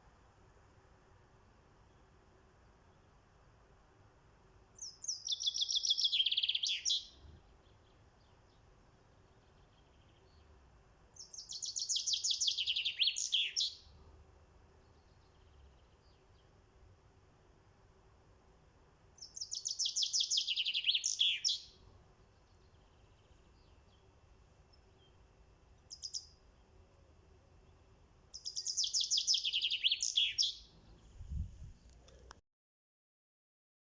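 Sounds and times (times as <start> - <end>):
bird singing high chirps: 4.8 - 7.2, 11.2 - 13.8, 19.2 - 21.8, 25.9 - 26.4, 28.3 - 31.9.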